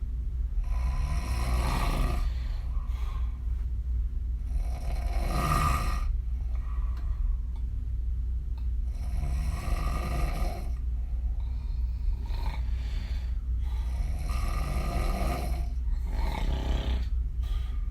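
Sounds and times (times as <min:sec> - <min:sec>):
steady low hum: 0:00.0 - 0:17.9
woman snoring: 0:00.6 - 0:02.5, 0:04.5 - 0:06.1, 0:08.9 - 0:10.8, 0:11.4 - 0:17.1
faint breaths: 0:00.6 - 0:03.8, 0:04.4 - 0:07.7, 0:08.8 - 0:17.9.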